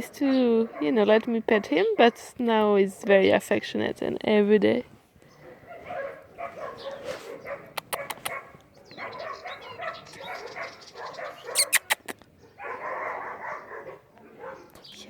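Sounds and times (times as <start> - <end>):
dogs barking: 0.0 - 2.3, 5.4 - 14.8.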